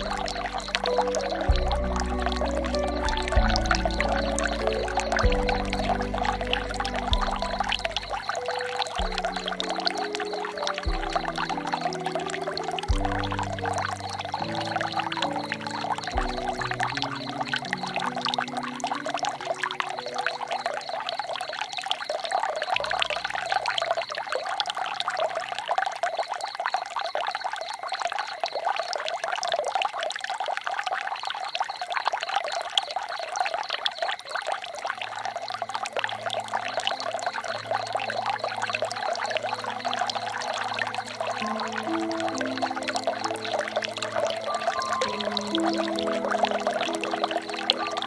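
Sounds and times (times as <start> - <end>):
soft low music notes: 0.0 - 21.4, 35.0 - 48.0
water pouring and splashing: 0.0 - 48.0.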